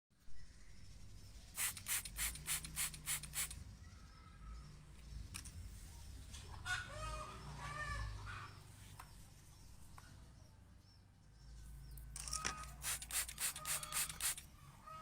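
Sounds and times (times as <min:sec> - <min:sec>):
bird chirping: 0:00.2 - 0:15.0
spray bottle squirting: 0:01.6 - 0:03.6, 0:12.6 - 0:14.5.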